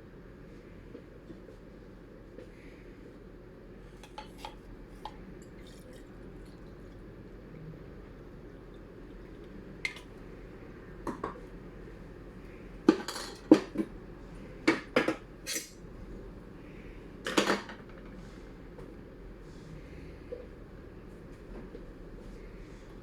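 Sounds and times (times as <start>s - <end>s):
utensil clinking against dishes: 4.0s - 6.0s.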